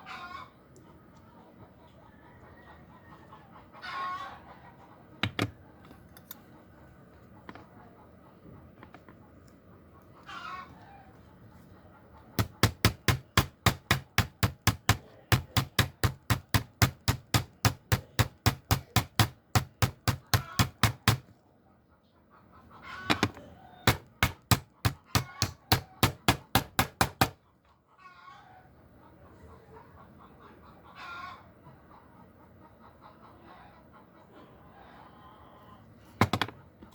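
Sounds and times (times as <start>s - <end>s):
chicken clucking and crowing: 0.0s - 5.8s, 9.7s - 21.2s, 21.9s - 36.9s
rapid sharp knocking: 12.4s - 21.2s, 23.9s - 27.4s.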